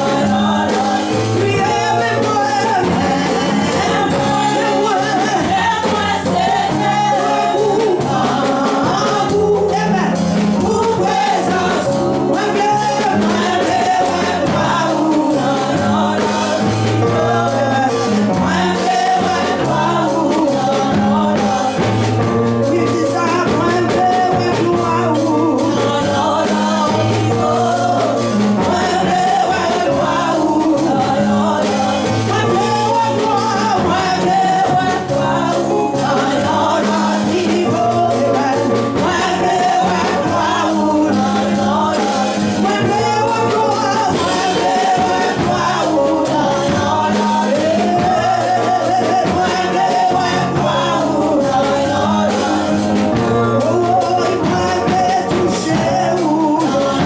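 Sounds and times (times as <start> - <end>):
band playing gospel song: 0.0 - 57.0
voices singing together: 0.0 - 57.0.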